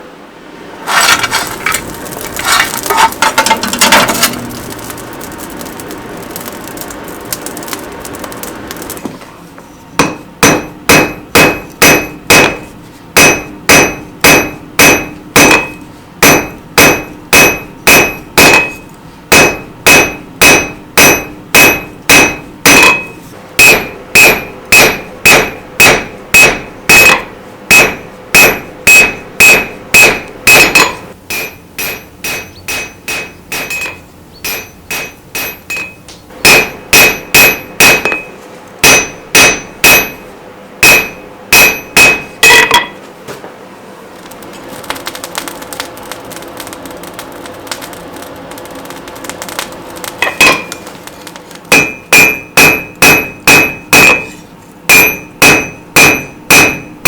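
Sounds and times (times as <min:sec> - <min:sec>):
hammer striking steel on anvil: 0:10.0 - 0:43.0, 0:49.3 - 0:50.9, 0:51.7 - 0:57.0.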